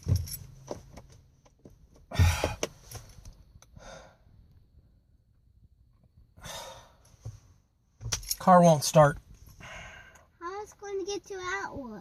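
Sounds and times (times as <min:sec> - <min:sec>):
person sighing heavily: 0:09.6 - 0:10.2.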